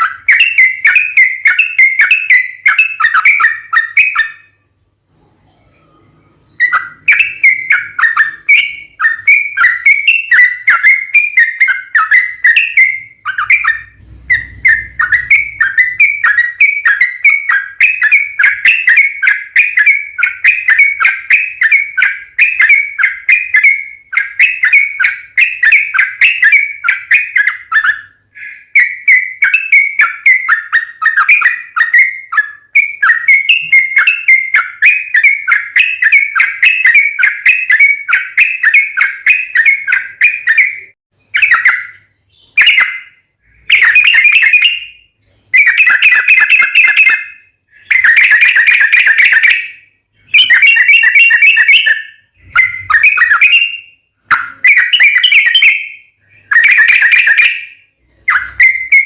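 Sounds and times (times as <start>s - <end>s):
bird singing rapid chirpy notes: 0.0s - 59.0s.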